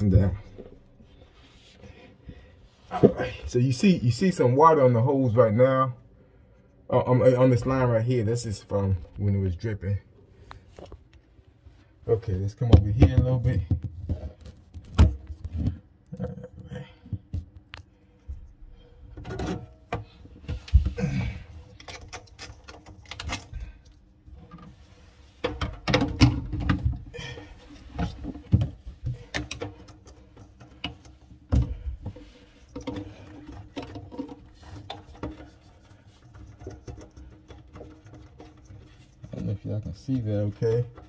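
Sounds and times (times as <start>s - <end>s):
plastic fittings clicking and knocking: 21.7s - 24.7s, 27.8s - 41.0s.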